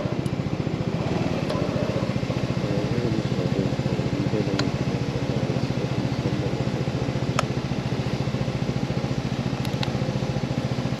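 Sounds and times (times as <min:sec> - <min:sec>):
motorcycle engine idling: 0:00.0 - 0:11.0.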